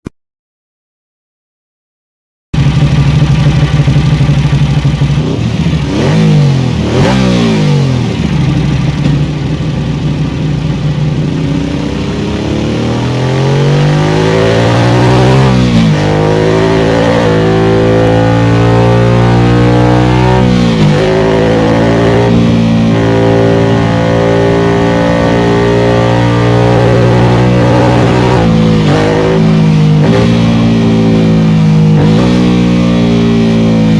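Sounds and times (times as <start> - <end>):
motorcycle engine revving: 2.6 - 33.9.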